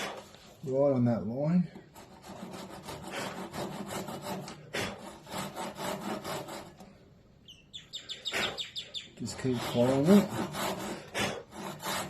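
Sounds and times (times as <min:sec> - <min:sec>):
hand saw cutting wood: 0:00.0 - 0:00.4, 0:01.6 - 0:07.1, 0:09.2 - 0:12.0.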